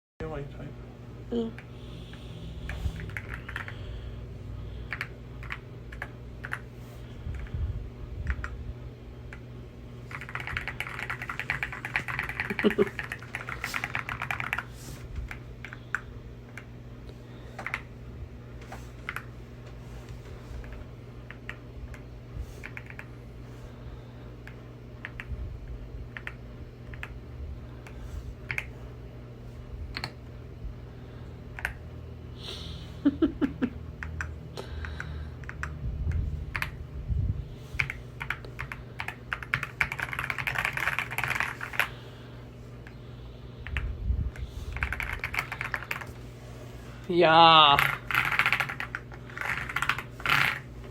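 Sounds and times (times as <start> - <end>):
mechanical keyboard typing: 3.0 - 3.7, 4.9 - 6.7, 10.1 - 14.7, 22.6 - 23.1, 26.1 - 27.2, 35.4 - 36.8, 37.8 - 41.9, 44.7 - 46.1, 47.7 - 50.6.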